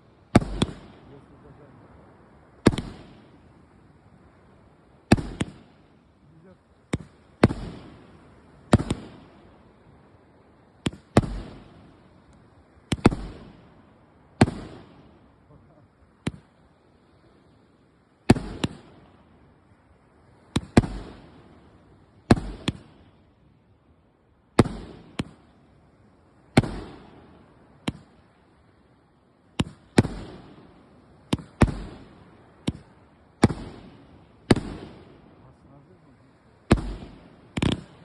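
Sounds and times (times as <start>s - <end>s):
firecracker bangs with echo: 0.3s - 1.8s, 2.6s - 3.5s, 5.1s - 5.8s, 6.9s - 9.7s, 10.8s - 11.9s, 12.8s - 13.8s, 14.4s - 15.2s, 18.3s - 19.1s, 20.4s - 21.6s, 22.3s - 23.1s, 24.6s - 25.5s, 26.5s - 28.2s, 29.6s - 35.4s, 36.7s - 38.0s.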